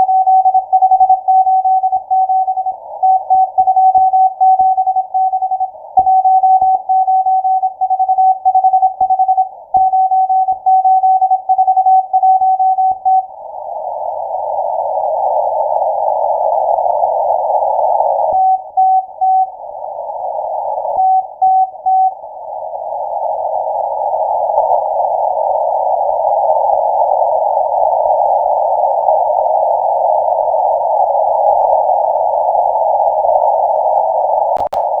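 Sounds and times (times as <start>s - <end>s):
morse code beeps: 0.0s - 13.2s, 34.6s - 34.8s
radio hiss: 34.6s - 35.0s.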